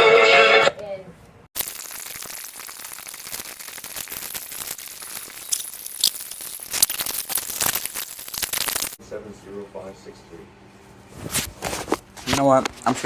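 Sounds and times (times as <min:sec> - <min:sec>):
crackling rustling noise: 0:01.6 - 0:09.0, 0:11.0 - 0:12.6
sharp clicks and crinkles: 0:01.6 - 0:09.0.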